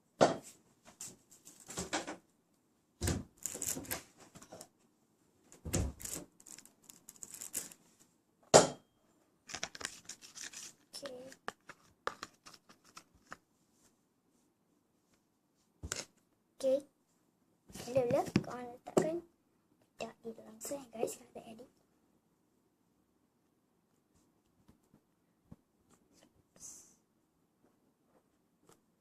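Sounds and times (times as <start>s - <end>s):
objects rustling and scraping: 0.4s - 2.2s, 3.1s - 4.9s, 5.5s - 8.2s, 9.5s - 14.0s.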